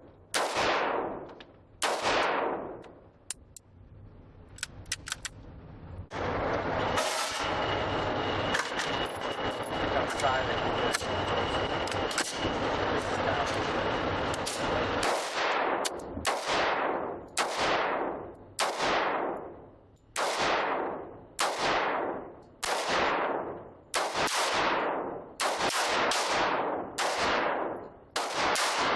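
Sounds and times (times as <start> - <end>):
steady background noise: 0.0 - 28.9
pistol shots echoing: 0.3 - 2.9, 15.0 - 19.6, 20.2 - 28.9.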